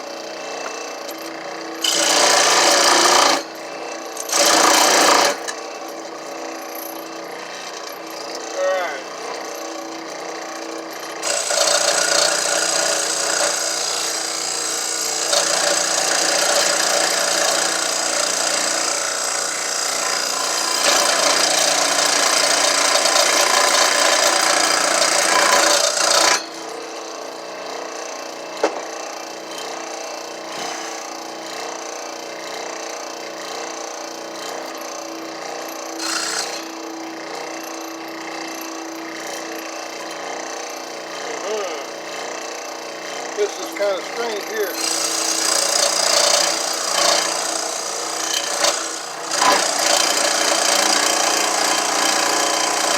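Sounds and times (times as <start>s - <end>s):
tool rasping wood: 1.8s - 9.8s, 10.6s - 27.0s, 30.4s - 31.4s, 36.0s - 36.8s, 41.0s - 52.9s.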